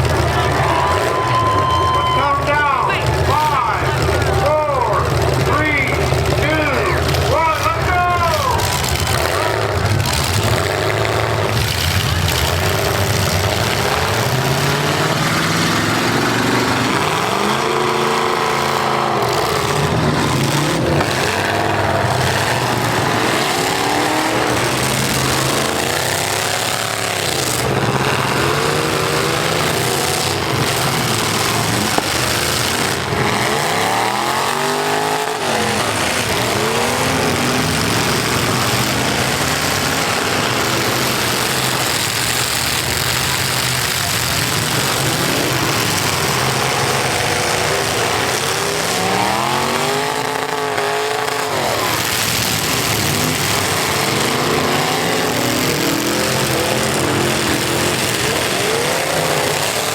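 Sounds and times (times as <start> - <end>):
car engines revving: 0.0 - 59.9.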